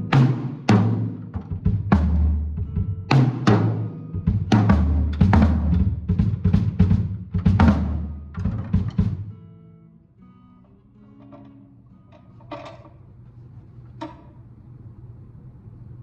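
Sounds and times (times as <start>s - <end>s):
drum kit playing: 0.0s - 9.3s.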